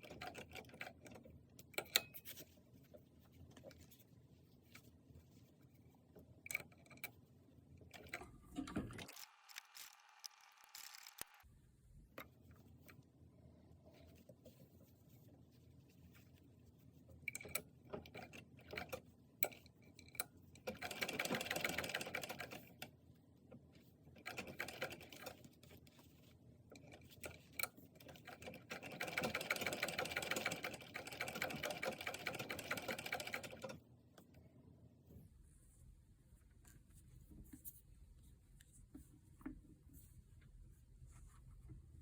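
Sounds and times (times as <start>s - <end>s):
sewing machine stitching: 20.7s - 22.8s, 24.2s - 25.4s, 27.4s - 33.8s.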